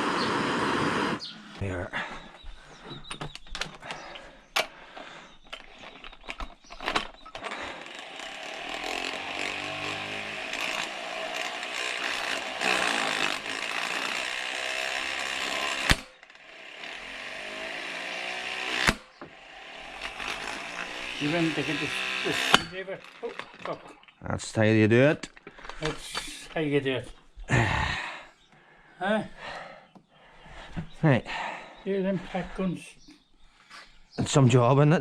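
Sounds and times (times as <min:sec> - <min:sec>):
impact wrench hammering: 0:07.8 - 0:22.8.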